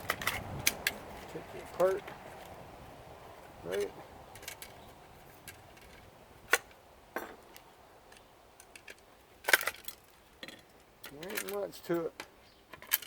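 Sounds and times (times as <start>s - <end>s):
metallic clicks of hand tools: 5.4s - 13.0s.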